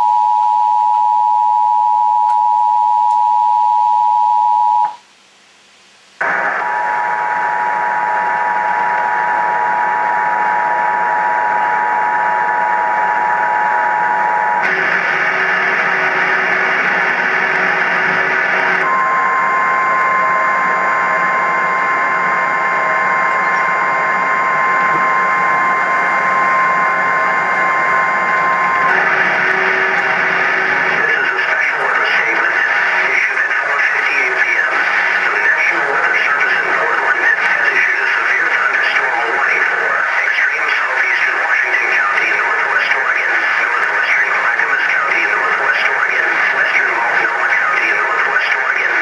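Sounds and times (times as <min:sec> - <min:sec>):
radio static hiss: 0:04.6 - 0:49.0
steady alarm tone: 0:06.2 - 0:33.1.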